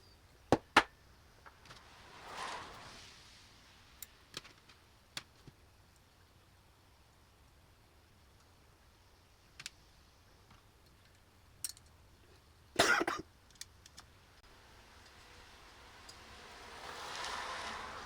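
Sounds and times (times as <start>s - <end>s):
small metal parts clicking: 10.8s - 12.0s, 13.5s - 14.1s.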